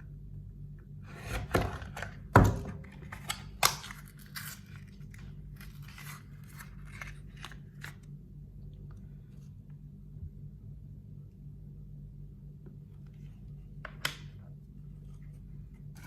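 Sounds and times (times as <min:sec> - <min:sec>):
steady low hum: 0:00.0 - 0:16.0
packaging tearing and rustling: 0:02.8 - 0:08.1.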